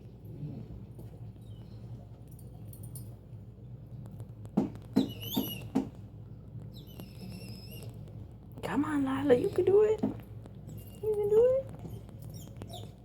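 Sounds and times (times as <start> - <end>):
small dog whining: 5.0 - 5.8, 6.7 - 8.0, 10.7 - 13.0.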